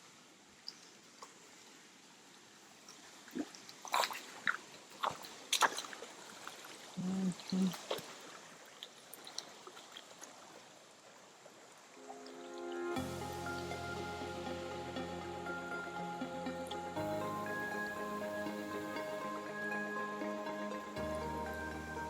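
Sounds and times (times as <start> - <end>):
forest stream rushing: 0.0 - 22.0
music: 12.0 - 22.0.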